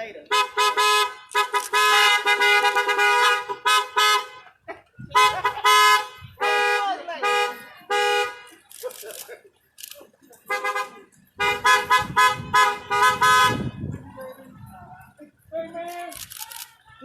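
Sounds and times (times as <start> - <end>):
car horns honking: 0.2 - 8.7, 10.4 - 14.2.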